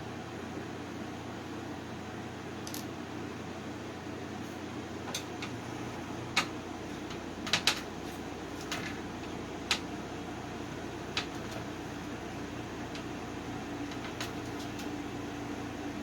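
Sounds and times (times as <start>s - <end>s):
fan-like hum: 0.0s - 16.0s
tools and parts clicking: 2.6s - 2.9s.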